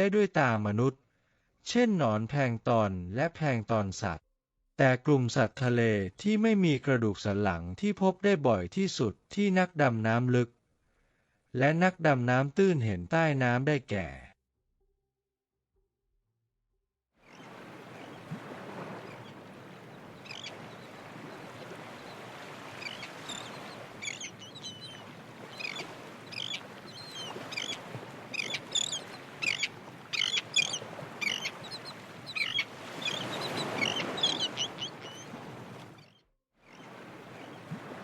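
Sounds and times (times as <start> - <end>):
birds chirping: 17.3 - 37.7.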